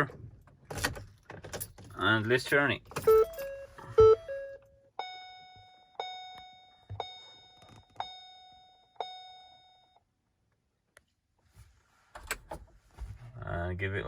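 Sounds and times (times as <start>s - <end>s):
dashboard warning chime: 3.0s - 10.0s.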